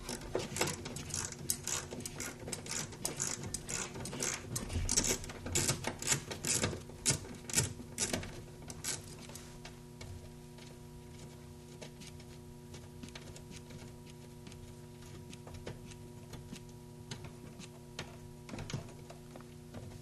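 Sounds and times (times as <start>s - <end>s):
steady electrical hum: 0.0s - 20.0s
ratchet clicking: 0.5s - 4.4s.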